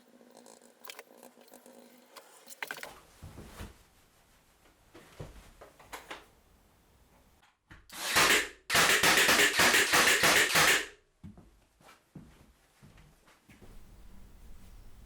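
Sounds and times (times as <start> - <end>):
power tool running: 7.9 - 10.9.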